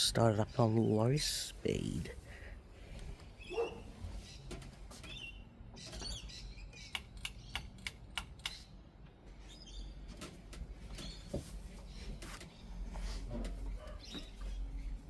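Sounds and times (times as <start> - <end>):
birds chirping: 0.0 - 15.0
sharp clicks: 6.8 - 8.7.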